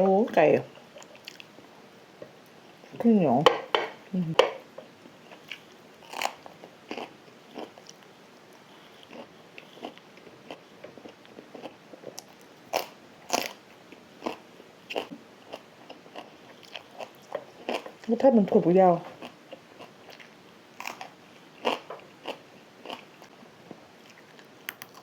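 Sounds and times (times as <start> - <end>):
person chewing crunchy food: 5.3 - 13.6, 14.2 - 18.1, 19.2 - 25.0.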